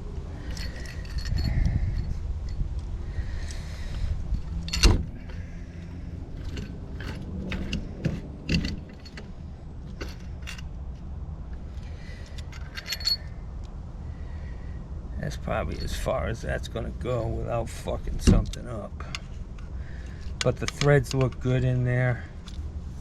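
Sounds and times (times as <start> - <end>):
low hum: 0.0 - 20.7
metal tools clinking on pipe: 0.4 - 2.6, 4.4 - 10.8, 11.7 - 13.4, 15.4 - 16.4.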